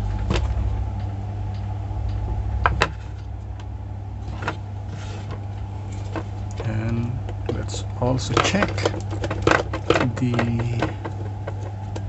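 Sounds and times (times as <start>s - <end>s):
steady low hum: 0.0s - 12.0s
plastic clicks and knocks: 6.1s - 12.0s.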